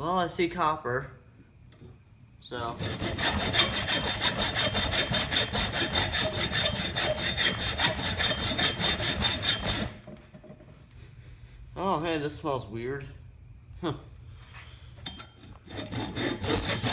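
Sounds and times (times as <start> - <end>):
hacksaw cutting metal: 2.6 - 10.1, 15.1 - 16.9.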